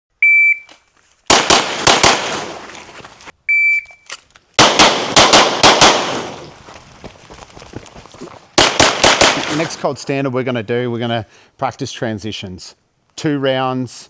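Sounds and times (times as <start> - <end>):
shot timer beep: 0.2 - 0.7
handgun shots with echo: 4.6 - 6.5, 8.6 - 9.8.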